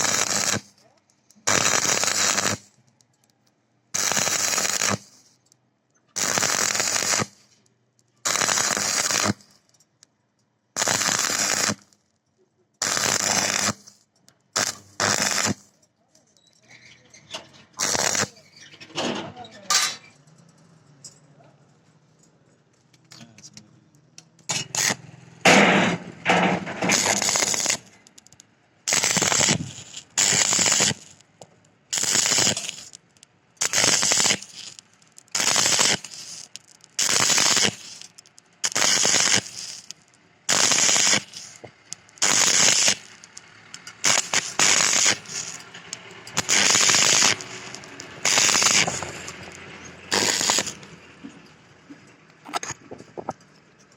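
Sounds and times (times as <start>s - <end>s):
welding arc crackling: 0.0s - 2.8s, 4.0s - 5.3s, 6.2s - 7.5s, 8.2s - 9.7s, 10.8s - 12.0s, 12.8s - 15.8s, 17.8s - 18.5s, 24.4s - 50.9s.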